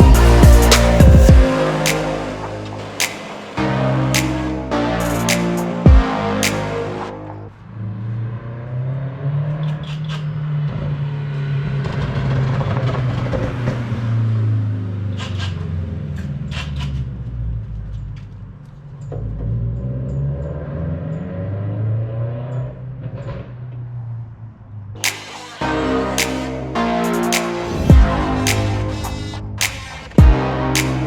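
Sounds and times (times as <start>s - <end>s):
sharp clicks: 25.0s - 25.6s, 29.6s - 30.2s.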